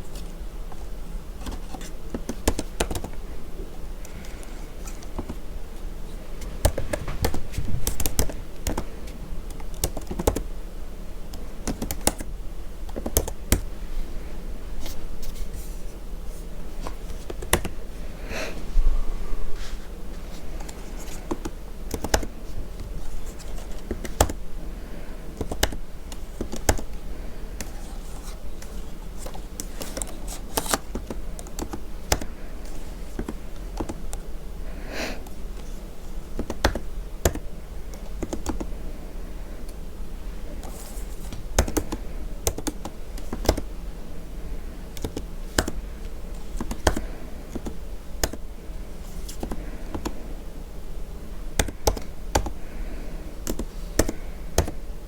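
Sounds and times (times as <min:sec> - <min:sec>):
computer keyboard typing: 0:01.4 - 0:03.2, 0:06.6 - 0:08.9, 0:09.5 - 0:10.5, 0:11.3 - 0:12.3, 0:12.9 - 0:13.7, 0:17.1 - 0:17.8, 0:20.6 - 0:22.3, 0:23.0 - 0:24.4, 0:25.4 - 0:26.9, 0:27.6 - 0:32.3, 0:33.1 - 0:34.2, 0:36.4 - 0:38.7, 0:40.6 - 0:43.7, 0:45.0 - 0:45.8, 0:46.5 - 0:48.4, 0:51.6 - 0:52.6, 0:53.4 - 0:54.8.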